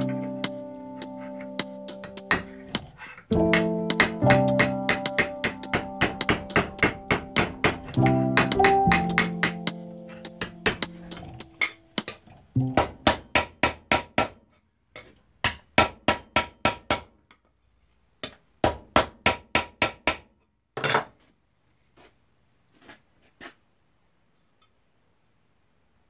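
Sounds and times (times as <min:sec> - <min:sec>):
hammer striking sheet metal: 0:00.0 - 0:14.0.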